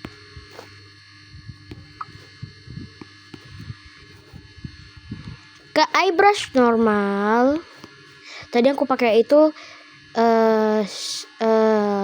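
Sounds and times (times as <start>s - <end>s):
low electrical hum: 0.0s - 12.0s
faint low bumps: 1.3s - 5.4s.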